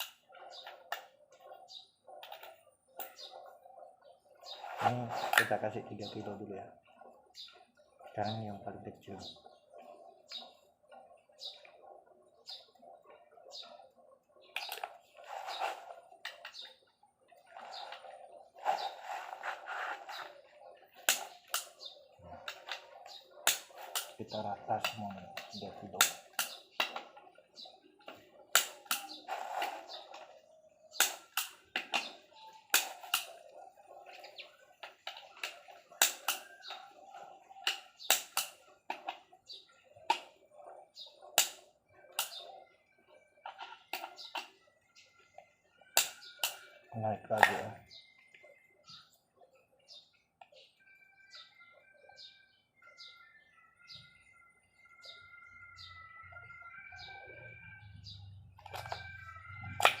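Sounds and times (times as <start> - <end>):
faint steady tones: 0.0 - 60.0
small bird chirping: 0.0 - 60.0.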